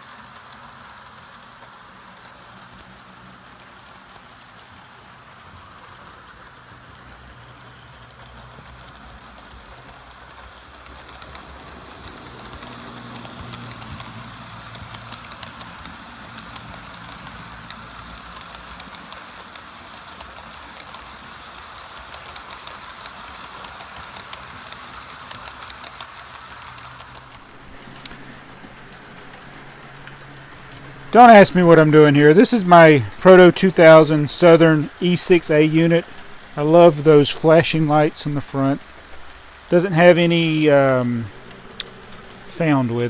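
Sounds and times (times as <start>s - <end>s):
model train wheels ticking on rails: 0.0s - 43.0s
model train motor humming: 10.4s - 15.6s, 27.1s - 43.0s.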